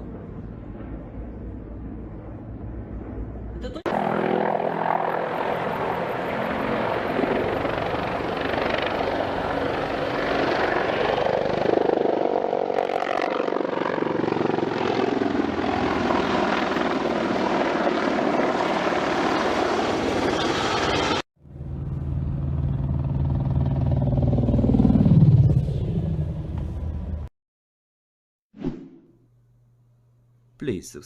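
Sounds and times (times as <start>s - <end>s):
engine whine: 20.3s - 27.3s.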